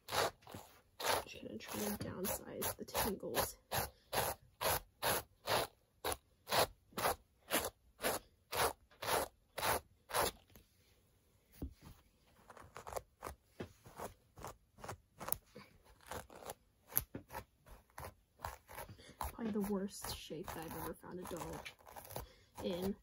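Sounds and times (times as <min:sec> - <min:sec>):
brush scratching through hair: 0:00.0 - 0:05.7, 0:12.4 - 0:23.0.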